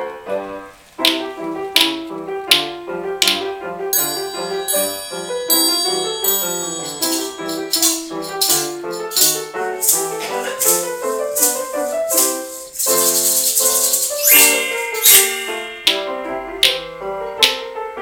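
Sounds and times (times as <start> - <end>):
metallophone and keyboard melody: 0.0 - 18.0
shaker rattle: 4.0 - 16.2.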